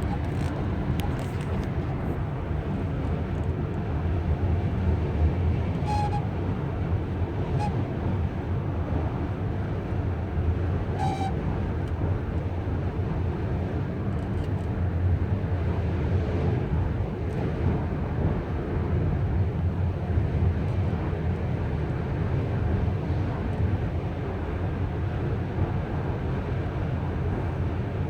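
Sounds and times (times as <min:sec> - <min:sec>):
van engine low rumble: 0:00.0 - 0:28.0.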